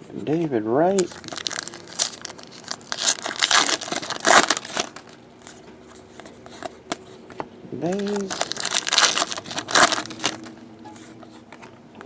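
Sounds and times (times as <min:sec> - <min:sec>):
plastic wrapping crinkling: 0:00.9 - 0:07.0, 0:07.9 - 0:11.1.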